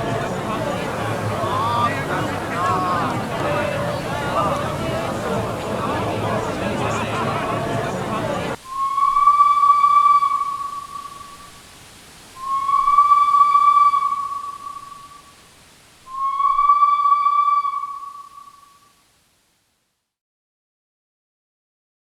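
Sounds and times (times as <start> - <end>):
steam locomotive whistle: 0.0 - 11.6, 12.3 - 15.3, 16.1 - 18.7.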